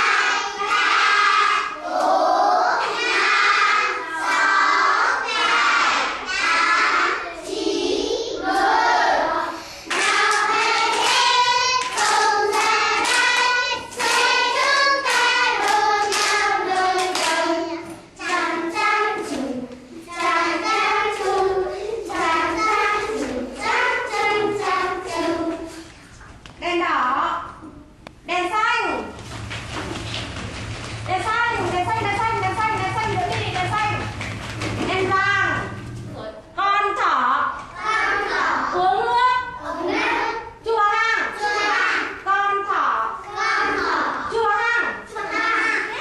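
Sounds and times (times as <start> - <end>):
children counting in unison chant: 0.0 - 9.6, 37.6 - 46.0.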